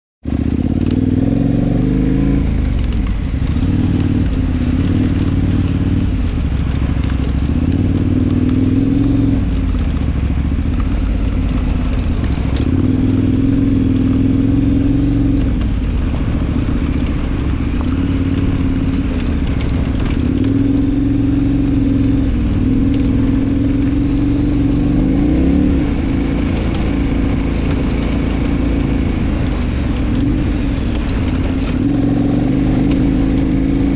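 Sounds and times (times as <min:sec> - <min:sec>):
motorcycle engine: 0:00.2 - 0:33.9
wind and road noise: 0:00.2 - 0:33.9.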